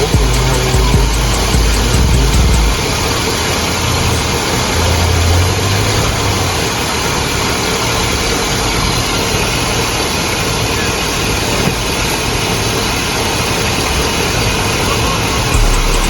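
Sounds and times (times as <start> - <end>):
deep low rumble: 0.0 - 4.0
car engine idling: 0.0 - 16.0.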